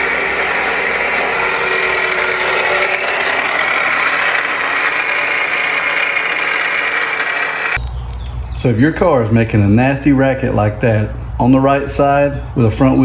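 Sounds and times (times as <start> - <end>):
car engine running: 0.0 - 7.8
scratchy high belt squeal: 0.0 - 7.8.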